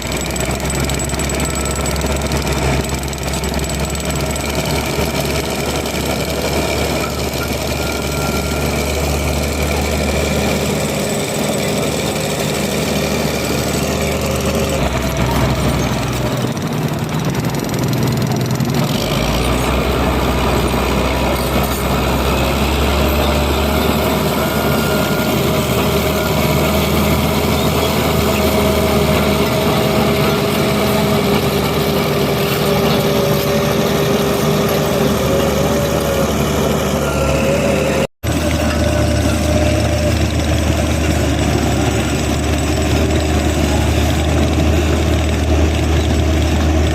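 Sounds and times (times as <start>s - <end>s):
bulldozer diesel engine running: 0.0s - 46.9s.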